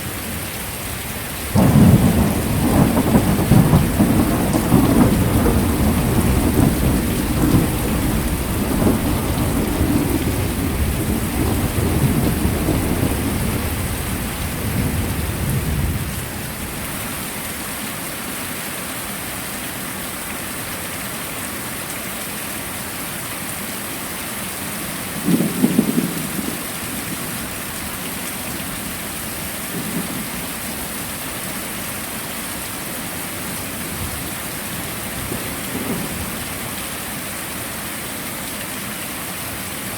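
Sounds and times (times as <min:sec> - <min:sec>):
heavy rain hissing: 0:00.0 - 0:18.4, 0:22.5 - 0:39.9
thunder rumble: 0:01.5 - 0:16.9, 0:25.2 - 0:27.5, 0:29.7 - 0:30.6.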